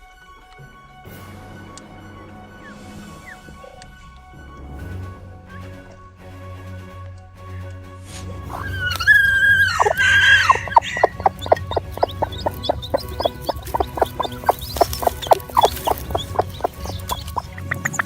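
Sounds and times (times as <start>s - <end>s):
chickens calling: 8.5s - 18.0s.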